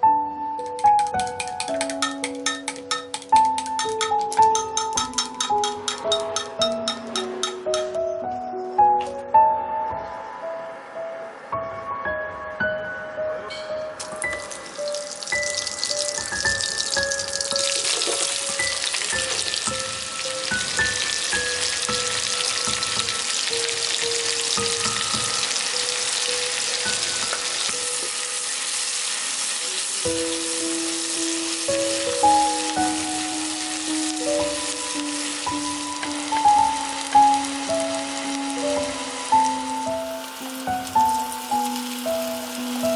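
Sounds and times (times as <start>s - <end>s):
food sizzling in an oiled pan: 14.0s - 42.9s.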